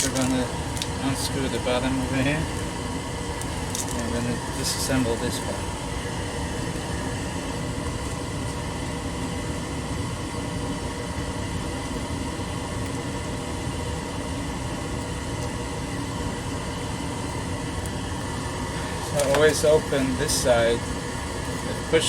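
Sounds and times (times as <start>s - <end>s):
machine hum: 0.0s - 22.0s.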